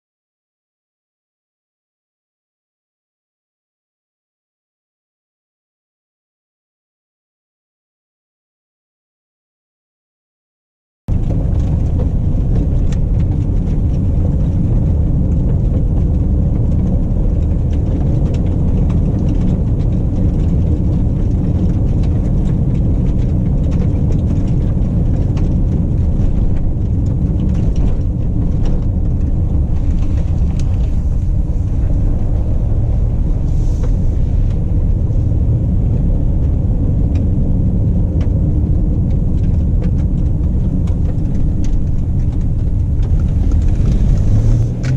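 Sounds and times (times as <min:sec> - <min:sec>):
car engine rumble: 0:11.1 - 0:44.9
road noise: 0:11.1 - 0:44.9.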